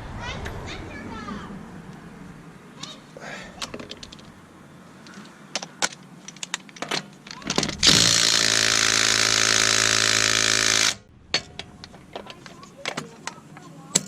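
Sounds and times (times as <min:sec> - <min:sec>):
tools clinking and rattling: 0:02.8 - 0:04.4, 0:05.0 - 0:14.0
impact wrench hammering: 0:07.6 - 0:11.7.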